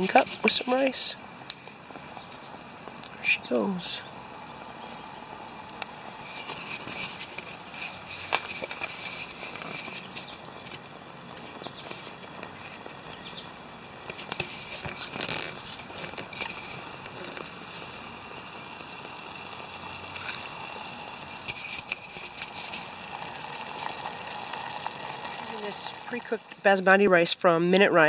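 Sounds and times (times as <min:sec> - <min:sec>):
food simmering and bubbling: 0:00.0 - 0:26.9.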